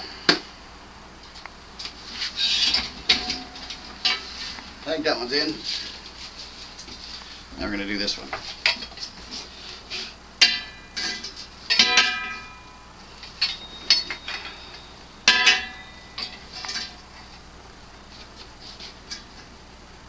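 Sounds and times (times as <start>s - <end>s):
steel parts clanking: 2.2s - 6.0s, 9.8s - 17.1s.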